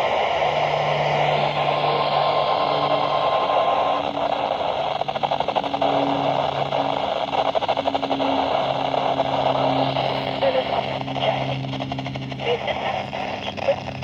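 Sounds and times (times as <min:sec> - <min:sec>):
low hum: 0:00.0 - 0:14.0
radio static hiss: 0:00.0 - 0:14.0.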